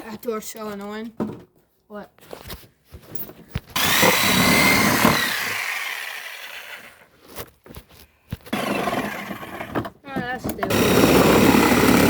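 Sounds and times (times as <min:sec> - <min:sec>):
power tool whining: 0:03.7 - 0:07.0, 0:08.5 - 0:09.8, 0:10.6 - 0:12.0.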